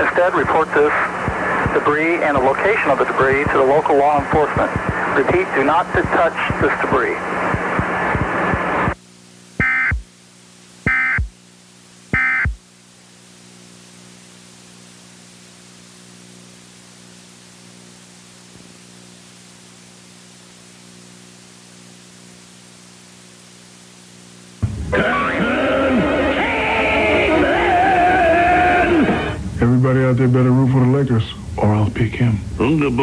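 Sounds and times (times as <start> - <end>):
faint static: 0.0 - 33.0
low electrical hum: 0.0 - 33.0
digital data tone bursts: 9.6 - 10.1, 10.9 - 11.4, 12.1 - 12.6.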